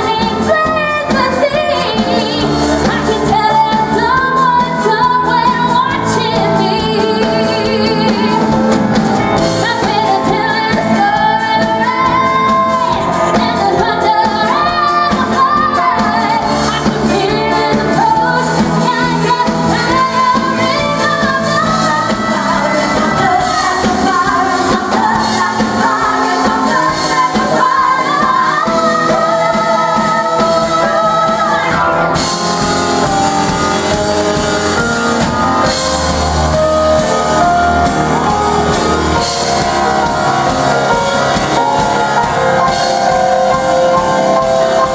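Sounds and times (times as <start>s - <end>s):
live pop band playing: 0.0s - 44.9s
female vocal group singing: 9.6s - 32.3s.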